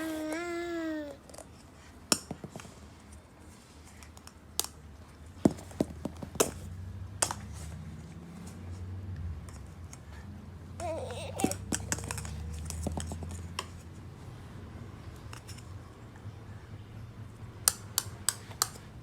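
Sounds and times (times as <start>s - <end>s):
baby vocalizing: 0.0s - 1.2s, 10.8s - 11.6s.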